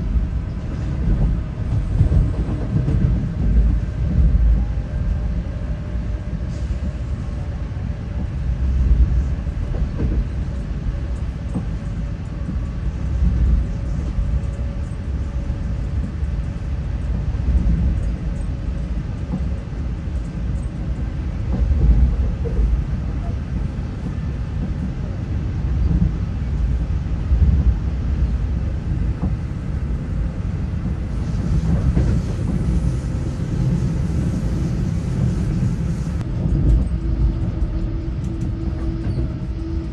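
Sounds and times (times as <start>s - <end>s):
train wheels rumbling on track: 0.0s - 39.9s
hiss: 30.7s - 36.2s.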